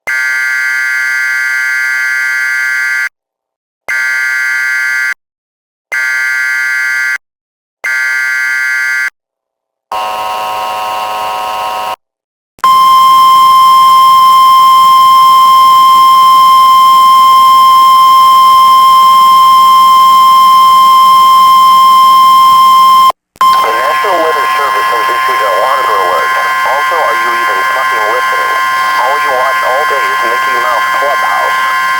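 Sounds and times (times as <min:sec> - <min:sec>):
loud steady alert tone: 0:23.4 - 0:31.9.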